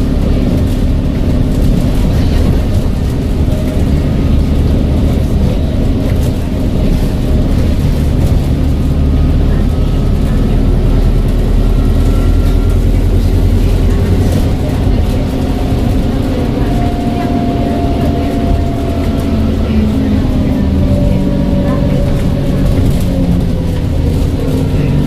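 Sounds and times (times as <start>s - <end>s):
bus engine drone: 0.0s - 25.0s
faint turbo whistle: 11.2s - 23.4s.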